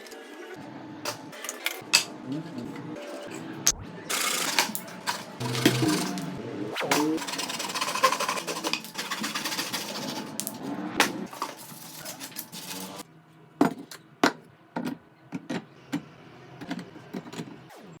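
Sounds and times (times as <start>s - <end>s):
woodworking power tool chattering: 4.1s - 10.4s.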